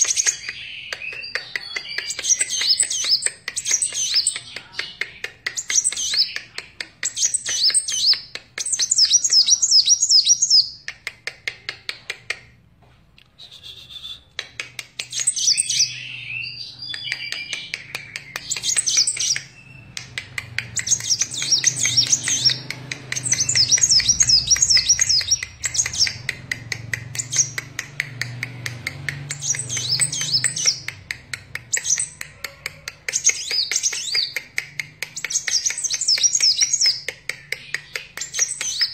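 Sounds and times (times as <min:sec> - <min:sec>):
bird twittering: 0:20.7 - 0:26.3.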